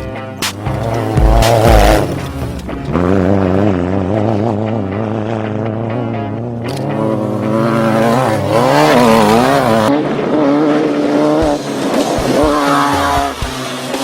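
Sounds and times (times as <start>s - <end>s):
engine revving: 0.0s - 14.0s
low thumps: 0.4s - 4.8s.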